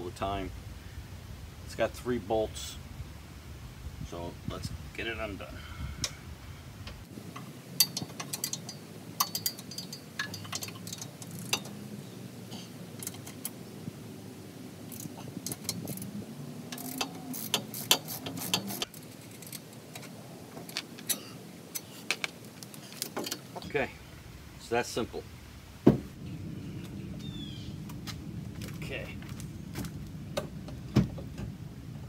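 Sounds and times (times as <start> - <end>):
metallic tool clicks and clinks: 7.8 - 11.7.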